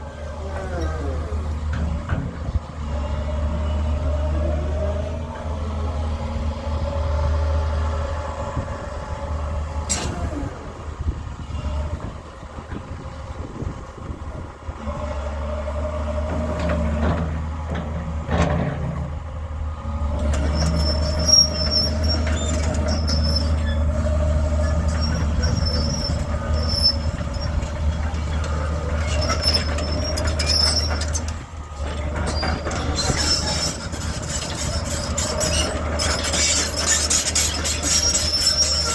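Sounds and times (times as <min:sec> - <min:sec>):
excavator diesel engine droning: 0:00.0 - 0:38.9
hydraulic whine: 0:13.3 - 0:38.9
high-pitched squeaks: 0:20.4 - 0:31.4, 0:32.1 - 0:38.9.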